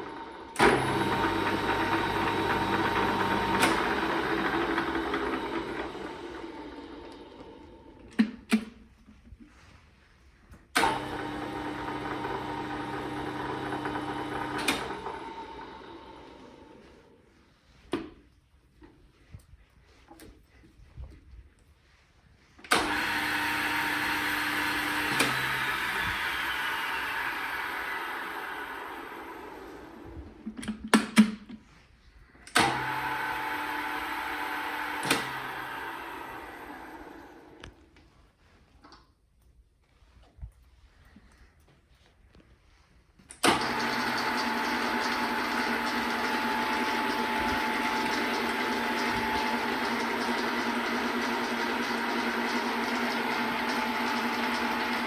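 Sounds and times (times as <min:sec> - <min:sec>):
lathe motor humming: 0:00.0 - 0:08.0, 0:10.8 - 0:17.2, 0:22.7 - 0:30.4, 0:32.6 - 0:37.7, 0:43.4 - 0:55.0
lathe spinning down: 0:00.0 - 0:08.0, 0:10.8 - 0:17.2, 0:22.7 - 0:30.6, 0:32.6 - 0:37.8, 0:43.4 - 0:55.0.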